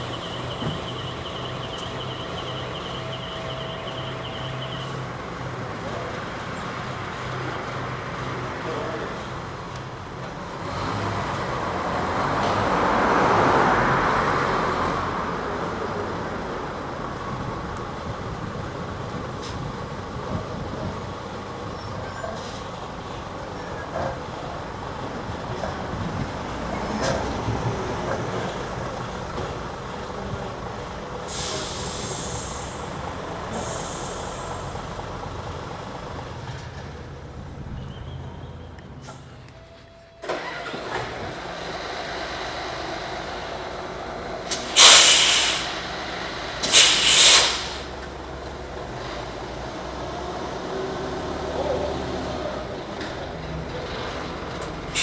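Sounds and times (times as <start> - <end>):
vehicle passing rushing noise: 7.7 - 21.8, 40.3 - 55.0
air hisses: 31.3 - 34.8, 44.5 - 48.0.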